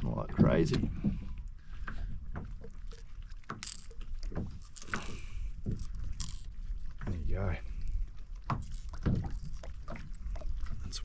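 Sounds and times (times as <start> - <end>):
water splashing: 0.0 - 11.0
fishing reel clicking: 3.6 - 4.0, 4.6 - 6.5.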